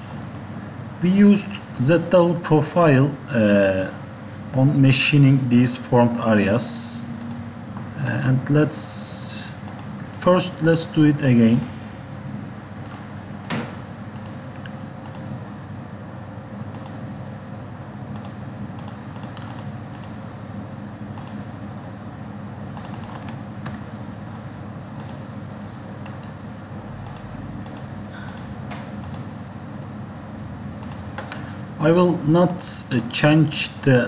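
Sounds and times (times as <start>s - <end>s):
low background hum: 0.0s - 34.0s
keyboard and mouse clicks: 9.7s - 10.2s, 12.8s - 15.3s, 16.7s - 17.0s, 18.2s - 20.2s, 21.2s - 21.4s, 22.8s - 24.4s, 25.0s - 26.4s, 27.0s - 29.3s, 30.8s - 31.6s.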